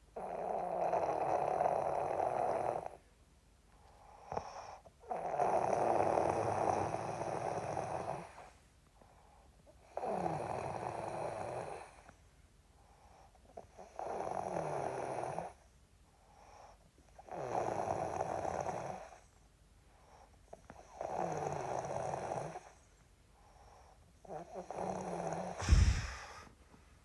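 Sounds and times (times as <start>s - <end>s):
man snoring: 24.7s - 26.5s
sudden loud burst: 25.6s - 26.5s.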